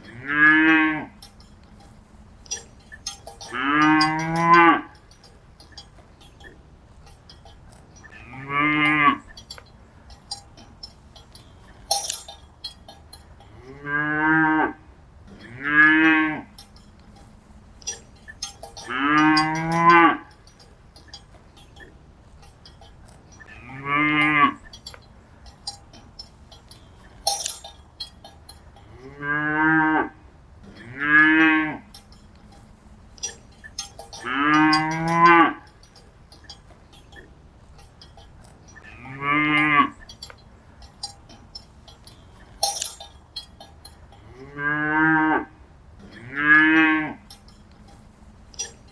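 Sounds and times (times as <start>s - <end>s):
cattle mooing: 0.0s - 1.9s, 2.5s - 5.0s, 8.0s - 9.5s, 13.4s - 16.8s, 17.8s - 20.4s, 23.4s - 24.9s, 28.8s - 32.6s, 33.2s - 35.7s, 38.8s - 40.2s, 44.1s - 47.5s
light high clinking and ticking: 0.0s - 48.9s.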